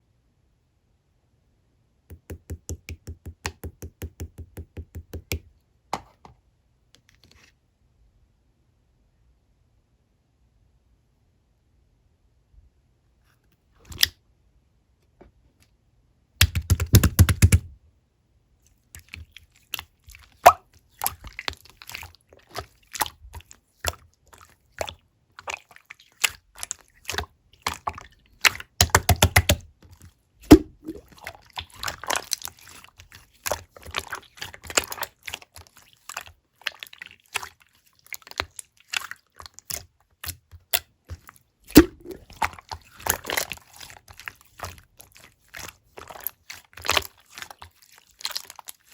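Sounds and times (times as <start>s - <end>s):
slime squished by hand: 16.4s - 17.7s, 19.0s - 48.9s.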